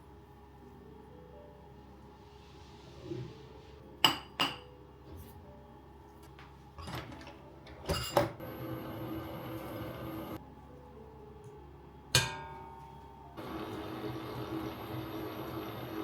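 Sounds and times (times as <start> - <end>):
dishes clinking: 4.0 - 4.8, 6.8 - 8.4
hum with thin high tone: 8.4 - 11.9.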